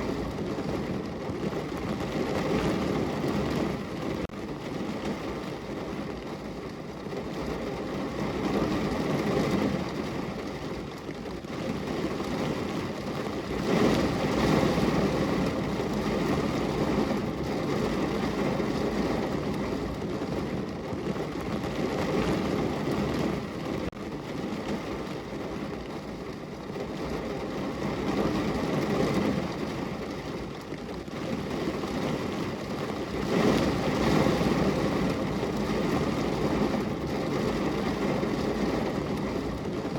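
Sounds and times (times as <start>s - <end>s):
rain on a car: 0.0s - 39.9s.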